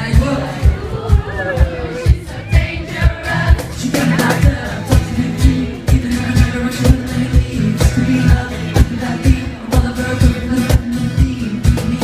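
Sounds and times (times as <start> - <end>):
live pop band playing: 0.0 - 12.0
person singing: 0.0 - 12.0.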